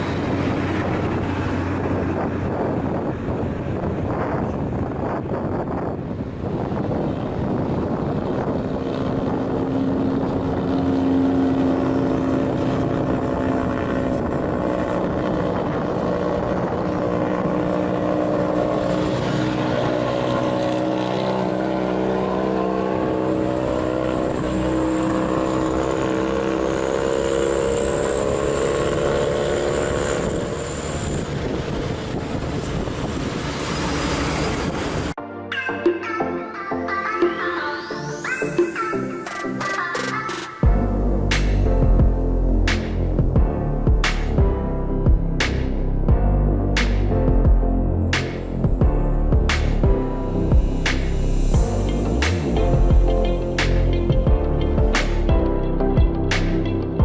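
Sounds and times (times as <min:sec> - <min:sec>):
truck diesel engine labouring: 0:00.0 - 0:05.8, 0:06.4 - 0:35.2
high whine: 0:00.0 - 0:35.2, 0:37.2 - 0:57.0.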